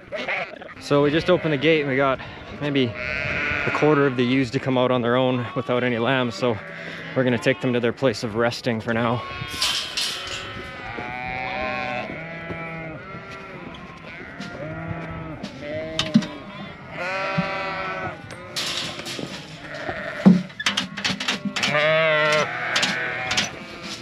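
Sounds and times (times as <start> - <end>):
sheep bleating: 0.0 - 8.0, 8.9 - 24.0
sharp knocks: 20.2 - 21.8.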